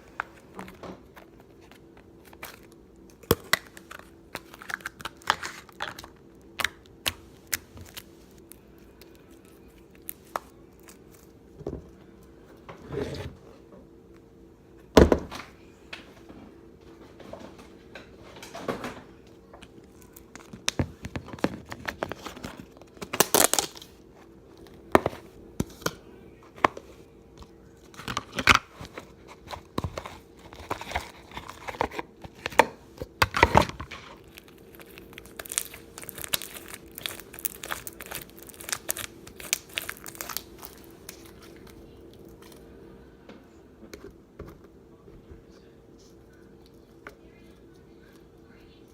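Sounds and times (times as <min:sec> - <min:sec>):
faint steady hum: 0:00.0 - 0:48.9
slime squished by hand: 0:34.1 - 0:42.6.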